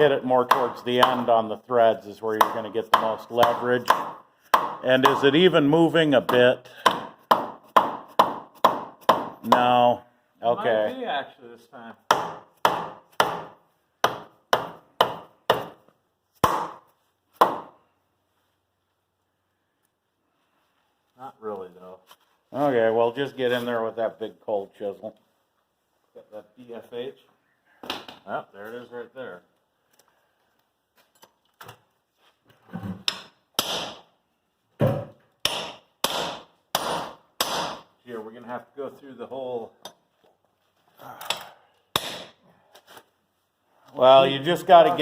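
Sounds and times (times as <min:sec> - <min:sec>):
hammer striking metal chisel: 0:00.4 - 0:01.3, 0:06.3 - 0:09.7, 0:33.1 - 0:34.0, 0:35.4 - 0:37.8, 0:41.9 - 0:42.4
hammer striking wood block: 0:00.4 - 0:01.3, 0:02.3 - 0:05.4, 0:06.2 - 0:09.8, 0:12.1 - 0:17.8, 0:33.0 - 0:34.1, 0:34.8 - 0:37.9, 0:41.9 - 0:42.4.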